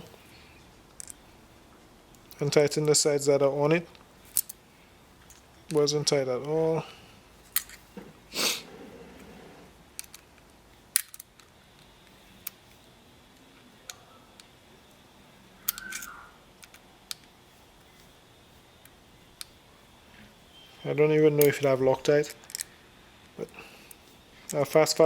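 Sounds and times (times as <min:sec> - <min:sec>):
rustling scrape: 0:07.4 - 0:09.8.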